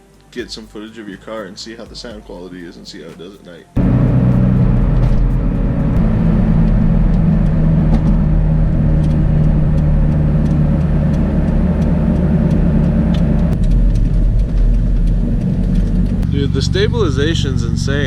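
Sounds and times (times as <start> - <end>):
car engine idling: 3.8 - 18.0.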